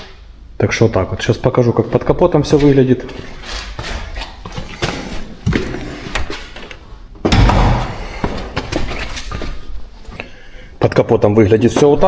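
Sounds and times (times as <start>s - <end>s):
loud thump: 7.2s - 8.4s.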